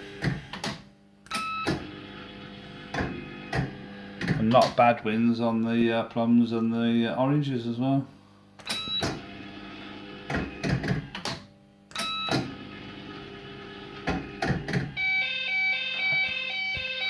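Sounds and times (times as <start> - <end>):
mechanical clicks and clunks: 0.2 - 1.9, 2.9 - 4.9, 8.6 - 9.3, 10.3 - 12.6, 14.0 - 15.1.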